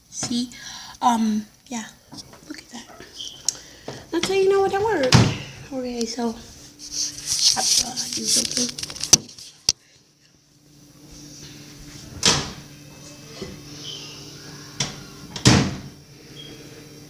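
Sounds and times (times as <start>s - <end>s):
steady low hum: 0.0s - 17.0s
door shutting knocks: 14.8s - 15.9s.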